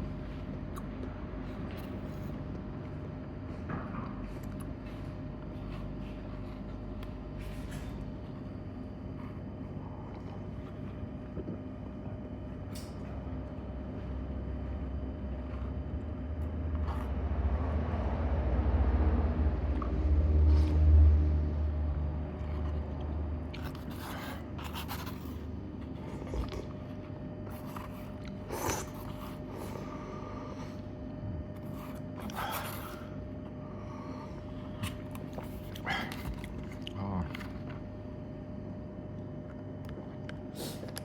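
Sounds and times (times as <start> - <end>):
vehicle passing by: 17.2 - 22.3.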